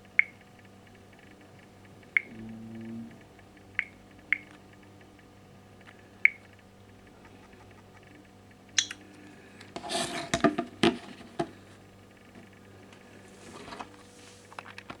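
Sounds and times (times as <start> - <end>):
soft rustle: 13.2 - 14.7.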